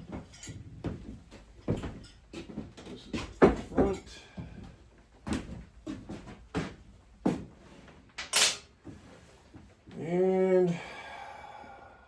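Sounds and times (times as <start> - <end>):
metal tools knocking and clunking: 8.2 - 8.7.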